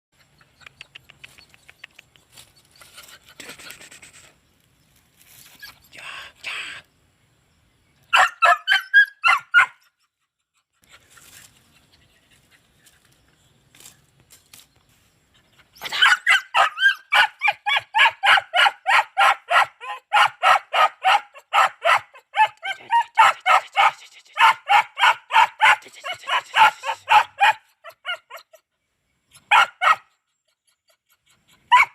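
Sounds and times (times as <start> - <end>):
dogs barking: 8.1 - 9.8, 15.8 - 28.4, 29.5 - 30.1, 31.7 - 31.9.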